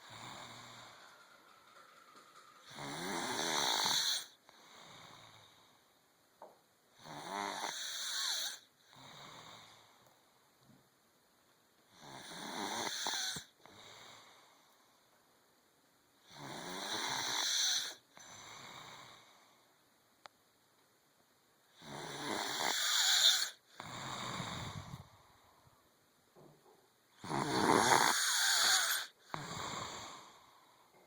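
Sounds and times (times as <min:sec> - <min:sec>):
person snoring: 0:00.0 - 0:01.3, 0:02.6 - 0:05.7, 0:07.0 - 0:10.0, 0:11.9 - 0:14.6, 0:16.3 - 0:19.4, 0:21.8 - 0:25.2, 0:27.2 - 0:30.8
quiet breath: 0:00.0 - 0:06.1, 0:08.5 - 0:10.6, 0:13.1 - 0:15.3, 0:17.9 - 0:19.9, 0:23.4 - 0:26.0, 0:28.5 - 0:31.0.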